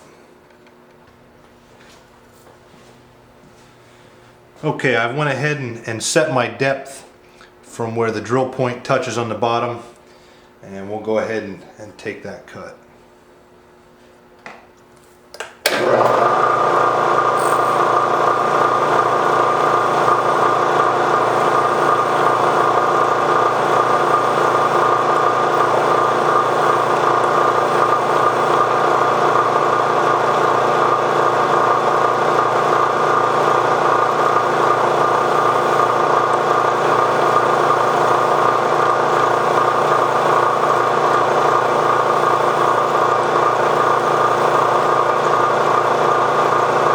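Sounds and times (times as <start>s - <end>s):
milling machine spindle whine: 15.7s - 46.9s
drill cutting steel: 15.8s - 46.9s.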